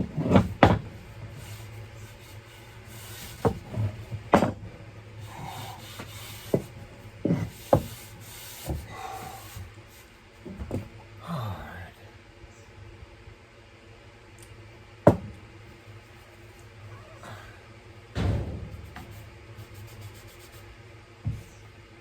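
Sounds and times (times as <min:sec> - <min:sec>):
wooden knocks and clunks: 0:00.0 - 0:01.0, 0:03.1 - 0:04.7, 0:05.5 - 0:08.0, 0:15.1 - 0:15.4.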